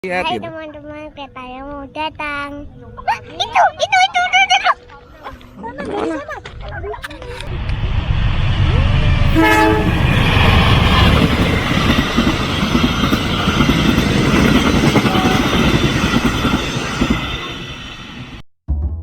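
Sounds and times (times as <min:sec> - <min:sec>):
train wheels rumbling on rails: 0:07.1 - 0:18.4.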